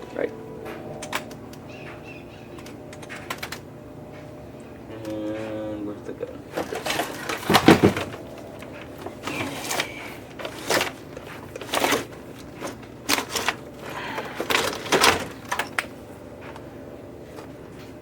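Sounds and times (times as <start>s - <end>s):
hard objects knocking and rattling: 6.5s - 16.6s.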